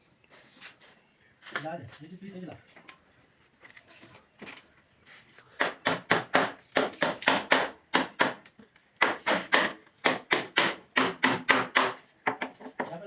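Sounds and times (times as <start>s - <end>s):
rapid hammering on wood: 5.6s - 8.4s, 9.0s - 12.5s.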